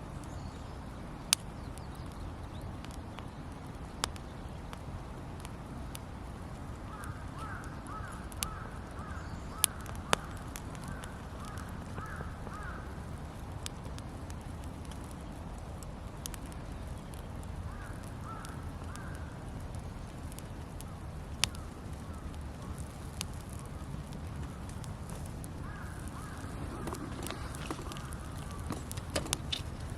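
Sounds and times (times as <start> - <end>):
campfire crackling: 0.0 - 29.9
bird calling: 25.6 - 29.9.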